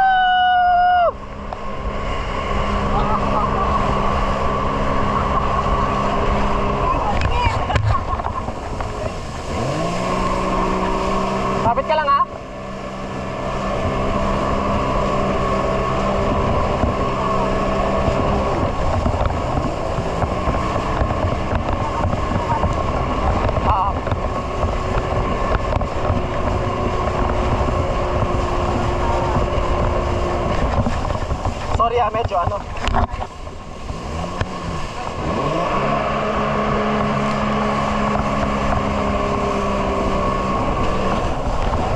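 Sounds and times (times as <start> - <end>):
jet ski engine running: 0.0 - 41.9.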